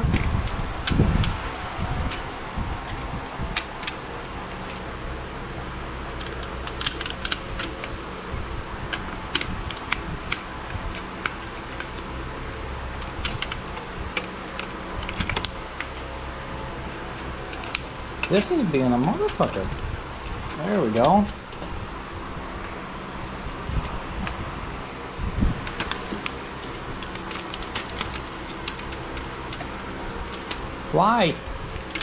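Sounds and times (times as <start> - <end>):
steady background hum: 0.0 - 32.0
hand tools clicking on metal: 17.4 - 21.6, 25.6 - 30.7.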